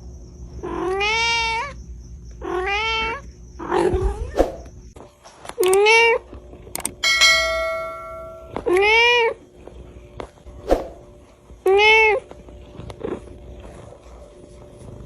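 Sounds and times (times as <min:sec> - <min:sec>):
ringing bell-like tone: 0:07.0 - 0:08.8.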